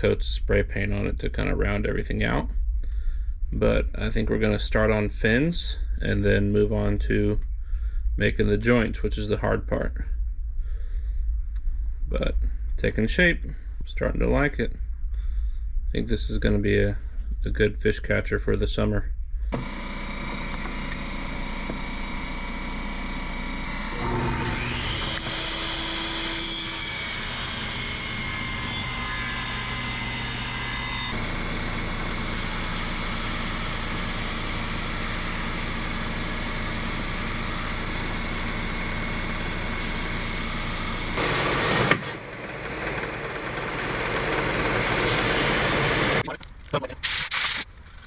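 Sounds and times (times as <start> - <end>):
small power tool cutting: 19.6 - 46.2.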